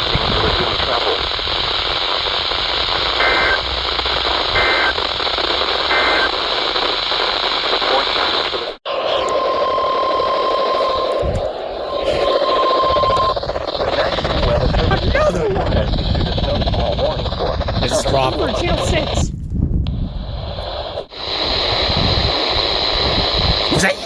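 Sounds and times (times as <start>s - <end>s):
static hiss: 0.0s - 19.2s, 20.4s - 24.0s
two-tone data bursts: 0.4s - 19.2s.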